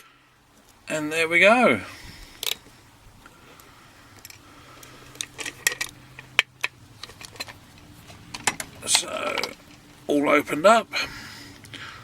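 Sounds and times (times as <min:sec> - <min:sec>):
padlock metallic clicks and rattling: 0:05.1 - 0:10.0.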